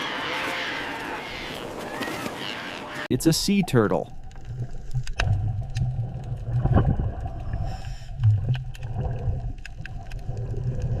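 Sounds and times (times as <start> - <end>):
low pulsing underwater rumble: 4.0 - 11.0.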